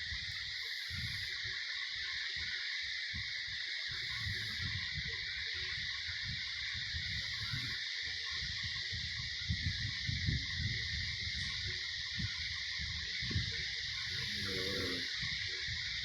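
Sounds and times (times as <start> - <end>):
steady high hiss: 0.0 - 16.0
woman snoring: 14.2 - 15.1.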